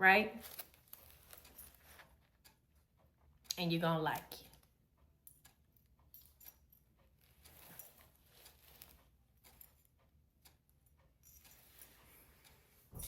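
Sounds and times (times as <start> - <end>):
light clicks and rustles: 0.4 - 2.4, 5.4 - 10.1.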